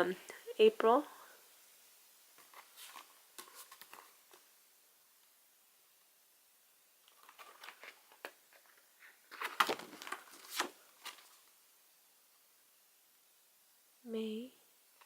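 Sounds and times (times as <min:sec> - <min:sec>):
calendar pages rustling: 0:02.4 - 0:04.5, 0:07.0 - 0:11.6.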